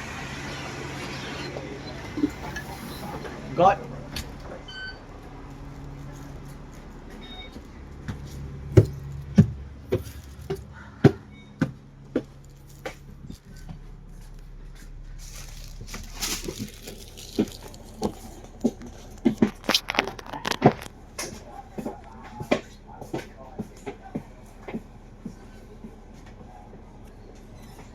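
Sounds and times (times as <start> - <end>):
bus engine idling: 0.0 - 27.9.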